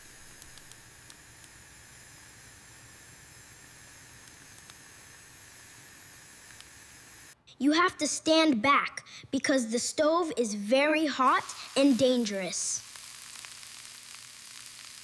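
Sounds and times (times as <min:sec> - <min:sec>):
faint ticks: 0:00.0 - 0:01.6
hiss of gas stove cooking: 0:00.0 - 0:07.4, 0:09.8 - 0:15.0.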